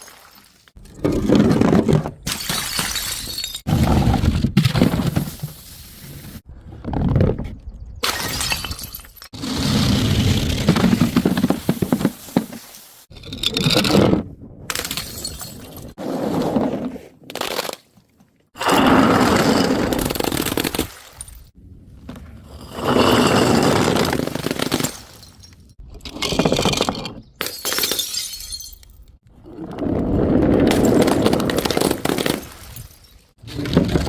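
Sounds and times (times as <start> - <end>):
glass bottles smashing: 2.3 - 3.7, 8.0 - 9.4, 14.7 - 16.0, 27.4 - 29.1.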